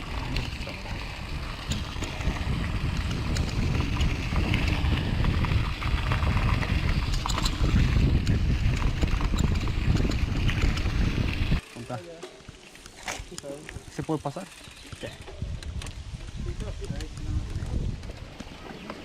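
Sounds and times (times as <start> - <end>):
wind buffeting the microphone: 0.0 - 11.6, 15.0 - 18.7
small clicks and rattles: 1.6 - 4.8, 5.4 - 16.0.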